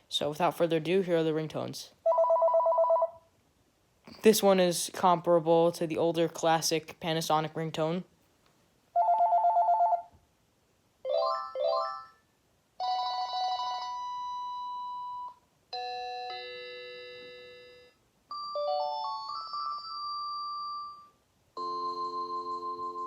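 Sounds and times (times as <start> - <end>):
electronic phone ringtones: 2.1 - 3.2, 9.0 - 10.1, 12.8 - 23.0.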